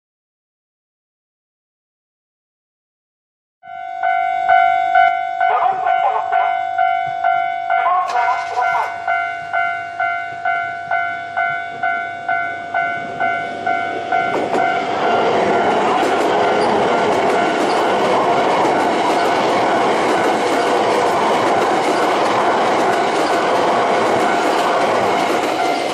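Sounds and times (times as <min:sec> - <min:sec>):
level crossing warning bell: 0:03.6 - 0:25.9
train passing: 0:03.8 - 0:25.9
recorded voice announcement: 0:05.4 - 0:06.8, 0:07.7 - 0:09.1.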